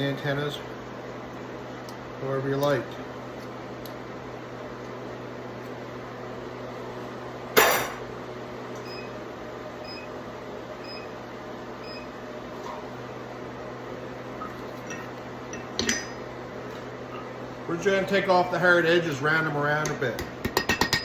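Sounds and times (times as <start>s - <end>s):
shop machinery humming: 0.0s - 21.0s
sharp metallic clank: 7.6s - 8.0s.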